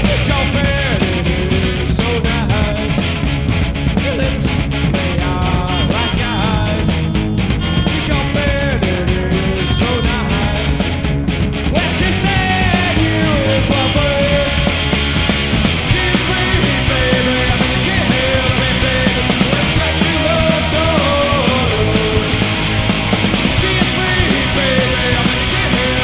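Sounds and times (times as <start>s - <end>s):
punk rock band playing: 0.0s - 26.0s
steady drum beat: 0.0s - 26.0s.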